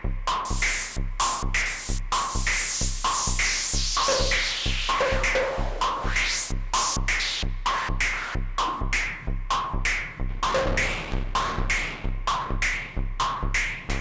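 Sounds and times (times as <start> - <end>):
synthesizer electronic pattern: 0.4 - 7.5.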